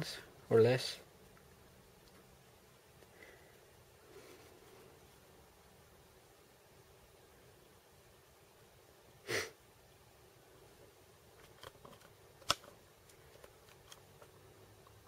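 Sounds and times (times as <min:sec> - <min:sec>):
person sniffing: 0:09.2 - 0:09.6.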